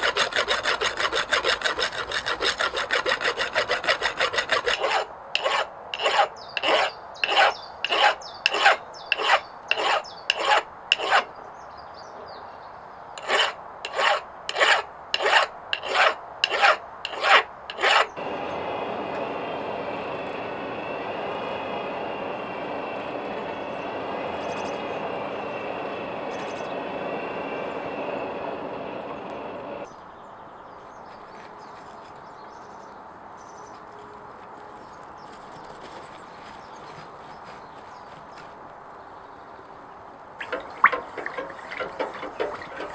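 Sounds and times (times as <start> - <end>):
file scraping steel: 0.0 - 11.3, 13.2 - 18.2, 40.4 - 42.9.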